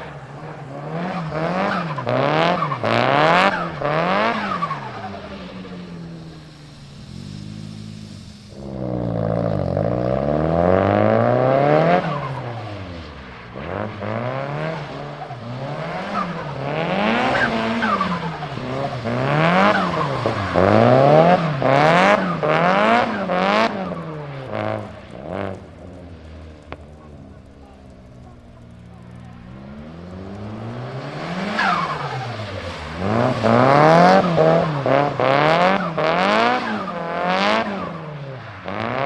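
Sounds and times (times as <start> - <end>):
car engine revving: 0.0 - 39.0
tyre squeal: 13.6 - 24.6, 30.7 - 37.2.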